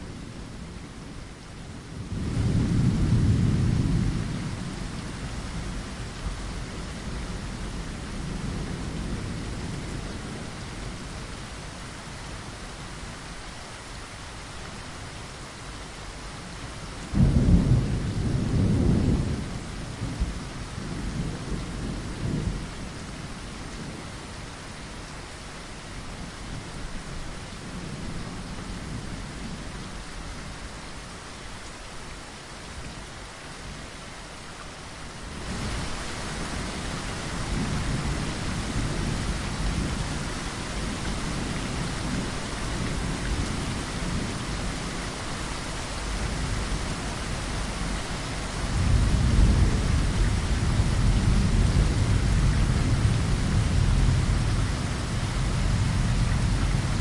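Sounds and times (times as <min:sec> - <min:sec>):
rain on a window: 0:00.0 - 0:57.0
thunder rumbling: 0:17.1 - 0:22.7, 0:46.0 - 0:57.0.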